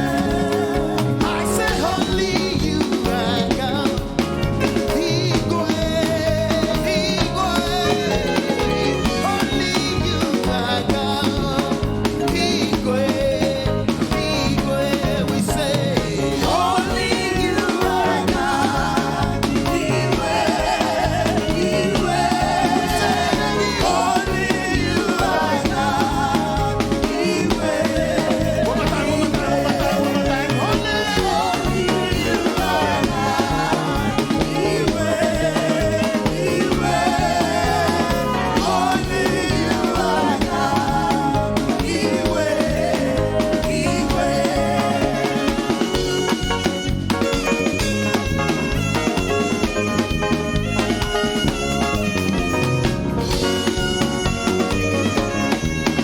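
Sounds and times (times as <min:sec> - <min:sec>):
band with guitar and drums: 0:00.0 - 0:56.0
people singing worship music: 0:00.0 - 0:56.0.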